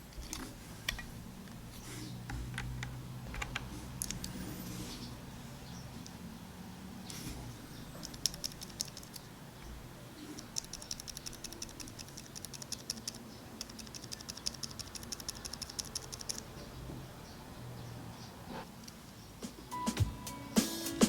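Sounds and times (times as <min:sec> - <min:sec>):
keyboard switch clicking: 0:00.1 - 0:01.1, 0:02.3 - 0:04.4, 0:08.0 - 0:09.3, 0:10.4 - 0:16.5.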